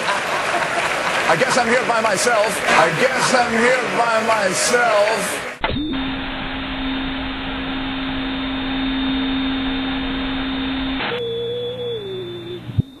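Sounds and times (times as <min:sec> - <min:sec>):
steady low tone: 0:05.6 - 0:13.0
wavering tone: 0:05.6 - 0:13.0.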